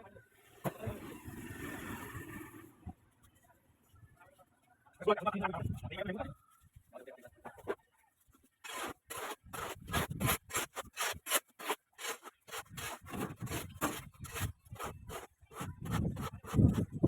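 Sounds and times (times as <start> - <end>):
hand tool scraping brick: 8.6 - 17.0.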